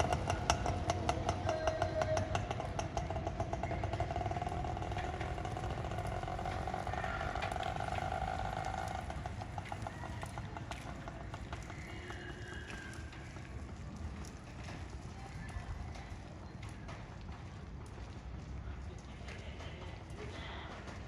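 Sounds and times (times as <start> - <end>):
small engine running: 0.0 - 13.8.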